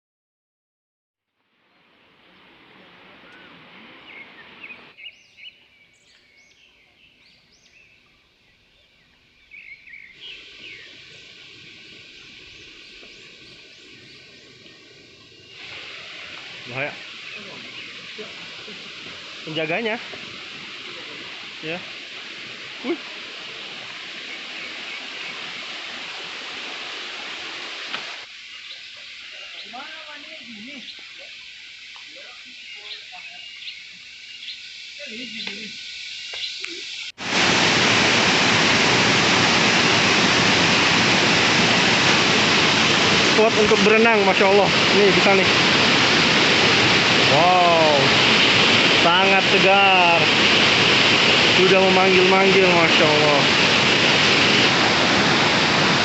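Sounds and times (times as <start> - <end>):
waterfall rushing: 2.0 - 5.0, 10.2 - 31.2, 36.9 - 56.0
small birds chirping: 3.2 - 21.8, 28.3 - 37.2.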